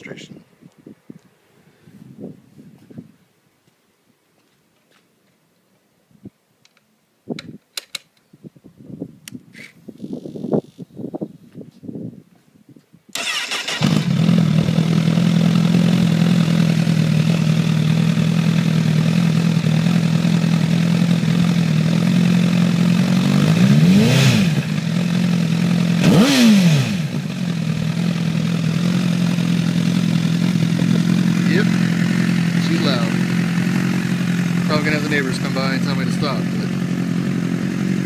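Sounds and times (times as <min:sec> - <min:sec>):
motorcycle starter cranking: 0:13.2 - 0:15.1
motorcycle engine revving: 0:13.2 - 0:38.0
motorcycle engine idling: 0:13.3 - 0:38.0.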